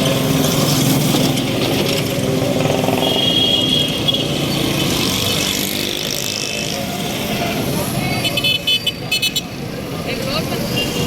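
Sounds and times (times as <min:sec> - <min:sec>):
cars and motorbikes passing: 0:00.0 - 0:11.0.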